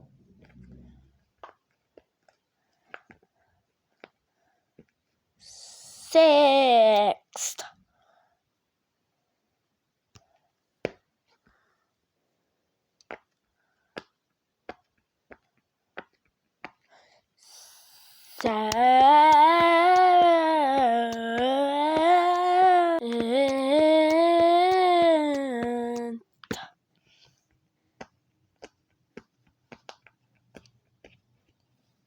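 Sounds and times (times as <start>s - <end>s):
person humming a tune: 5.5s - 7.6s, 17.4s - 26.7s.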